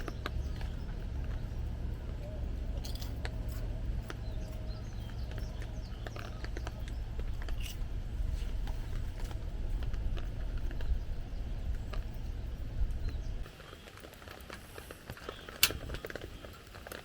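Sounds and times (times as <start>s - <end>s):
low rumble: 0.0s - 13.5s
raindrops tapping: 0.0s - 17.0s.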